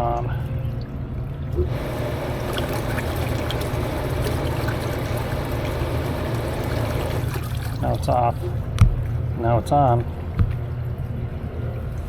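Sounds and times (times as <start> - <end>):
hot tub water rushing and churning: 0.0 - 12.0
pump motor humming: 1.5 - 8.7.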